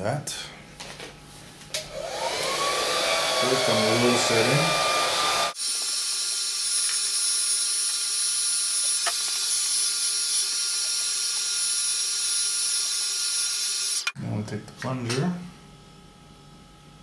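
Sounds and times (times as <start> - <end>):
hot-air blower whooshing hiss: 1.8 - 8.0.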